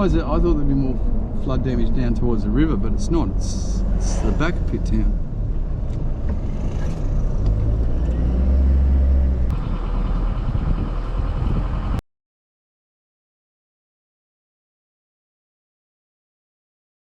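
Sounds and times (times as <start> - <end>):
car engine and road rumble: 0.0 - 12.0.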